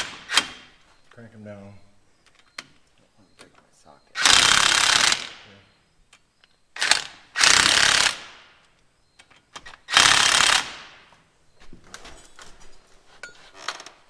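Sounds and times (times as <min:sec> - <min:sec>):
impact wrench bursts: 0:04.2 - 0:05.5, 0:06.8 - 0:08.5, 0:09.8 - 0:11.0.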